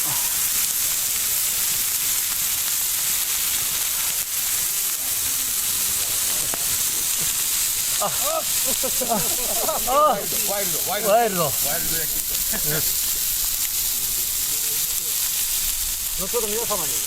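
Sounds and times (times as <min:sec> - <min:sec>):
steak sizzling on griddle: 0:00.0 - 0:17.0.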